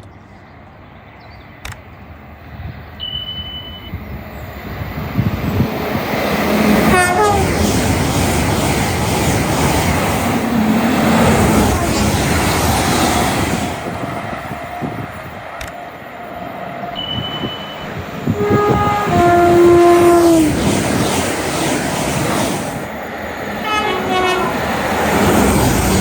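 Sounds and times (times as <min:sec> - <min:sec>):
train passing with rushing noise: 0:00.0 - 0:26.0
two-tone train horn: 0:06.8 - 0:07.5, 0:17.0 - 0:20.5, 0:23.6 - 0:24.7.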